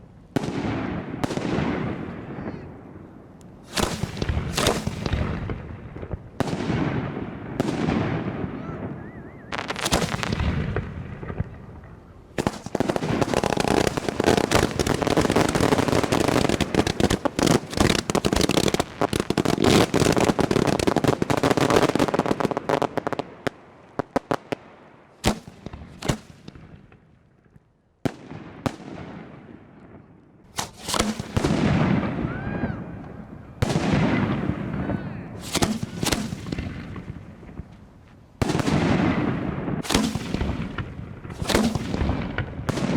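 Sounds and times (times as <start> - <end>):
fireworks bursts and bangs: 0.0 - 2.6, 3.6 - 24.6, 25.2 - 27.0, 28.0 - 29.6, 30.5 - 42.9.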